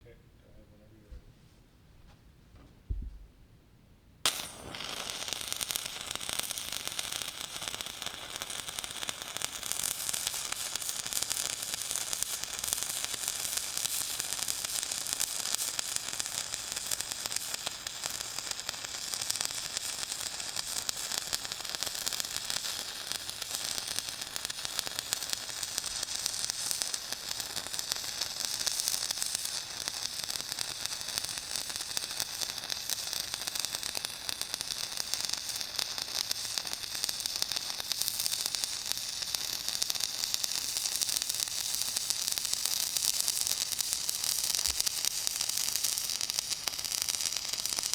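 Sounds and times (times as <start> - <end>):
arc welding crackling sizzle: 4.2 - 47.9.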